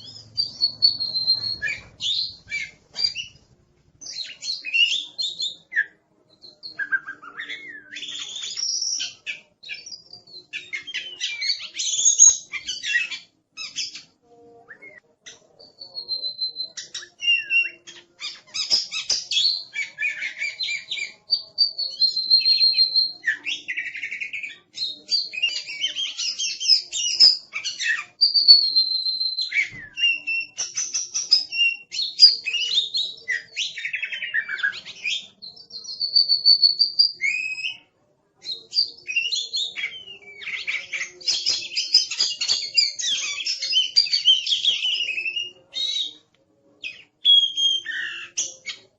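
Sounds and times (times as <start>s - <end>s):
bird singing varied song: 0.0s - 3.4s, 4.0s - 48.9s.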